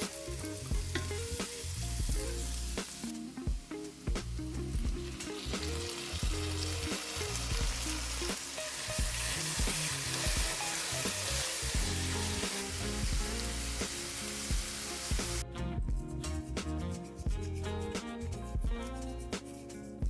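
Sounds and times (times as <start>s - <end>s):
utensil stirring in a pan: 0.0s - 3.1s, 5.0s - 15.4s
food sizzling in a frying pan: 0.0s - 4.1s, 5.0s - 15.4s
background music: 0.0s - 20.0s.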